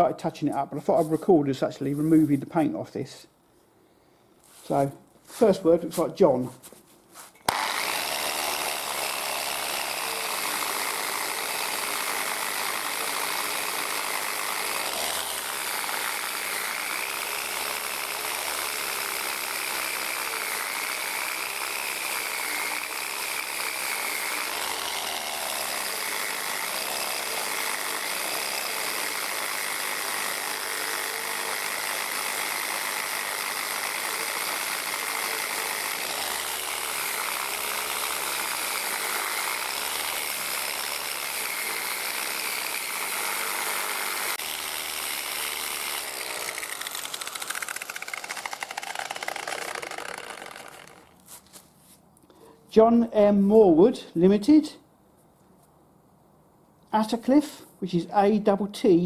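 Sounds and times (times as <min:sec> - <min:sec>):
power tool stripping paint: 0:07.4 - 0:51.6.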